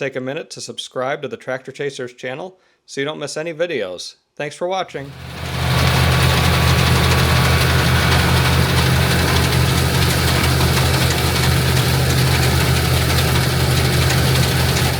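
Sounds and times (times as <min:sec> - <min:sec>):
tractor engine running steadily: 0:05.1 - 0:14.9.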